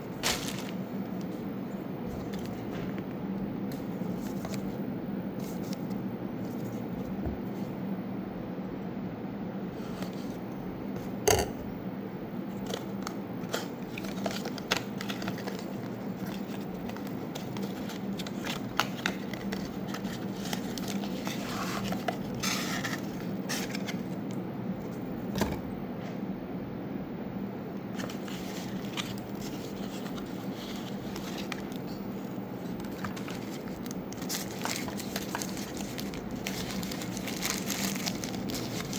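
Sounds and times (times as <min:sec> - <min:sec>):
packaging rustle: 0:00.0 - 0:00.8, 0:12.7 - 0:24.1, 0:28.0 - 0:32.0, 0:32.7 - 0:38.9
steady low hum: 0:00.0 - 0:38.9
packaging handling clicks and scrapes: 0:12.7 - 0:24.2, 0:28.0 - 0:38.9.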